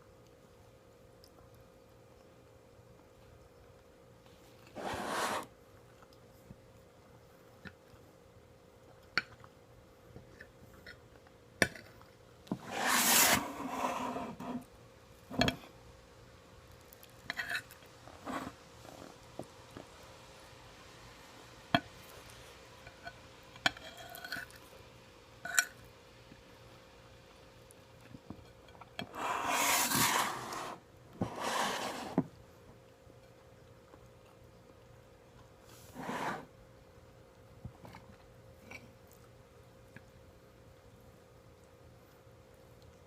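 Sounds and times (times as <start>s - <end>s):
eating and handling noises: 0.0s - 43.0s.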